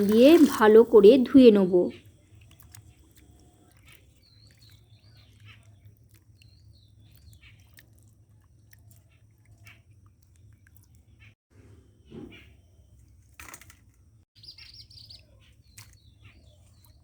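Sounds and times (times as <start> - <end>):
wet squishing of chicken washing: 0.0 - 1.1, 2.2 - 11.4
bird chirping: 14.4 - 17.0.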